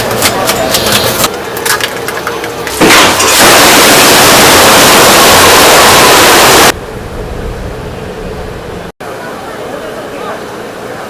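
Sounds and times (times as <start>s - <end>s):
loud rushing hiss: 2.9s - 6.8s.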